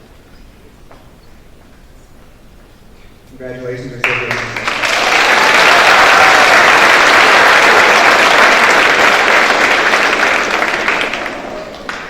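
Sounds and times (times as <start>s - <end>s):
audience applauding in a hall: 4.0s - 12.0s.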